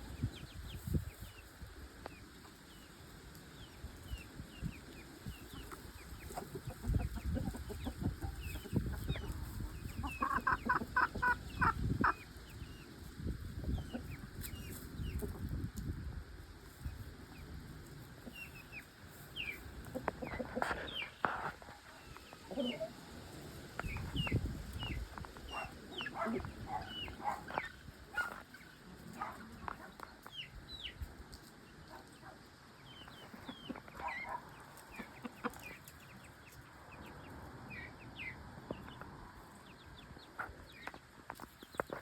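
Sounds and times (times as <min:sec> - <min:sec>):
chickens clucking: 0:00.0 - 0:42.0
chicks peeping: 0:00.0 - 0:42.0.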